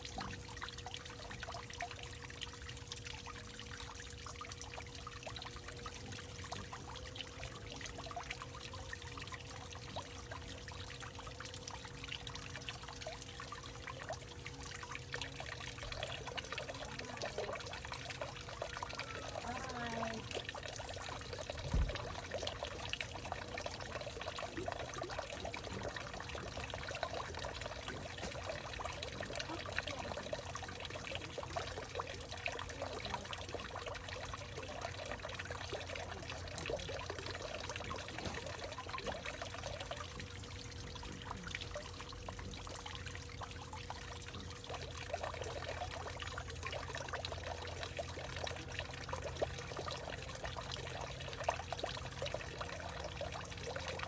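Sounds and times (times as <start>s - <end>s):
water trickling into tree trunk: 0.0s - 54.0s
low thump: 21.6s - 22.2s.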